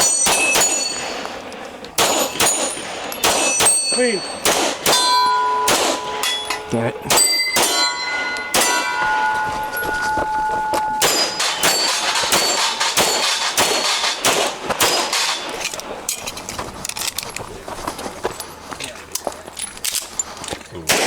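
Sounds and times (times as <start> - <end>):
rapid pistol shots: 0.0 - 1.3, 2.0 - 5.1, 5.7 - 6.0, 7.1 - 8.9, 11.0 - 16.0
steel targets clanging: 0.0 - 17.4.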